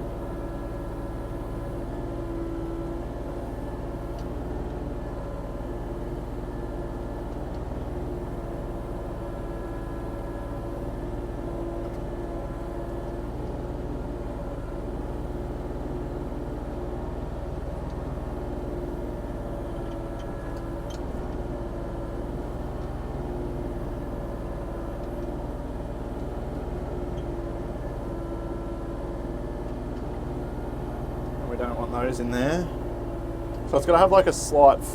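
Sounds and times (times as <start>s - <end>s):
diesel engine running: 0.0s - 34.9s
hydraulics whine: 17.7s - 34.9s.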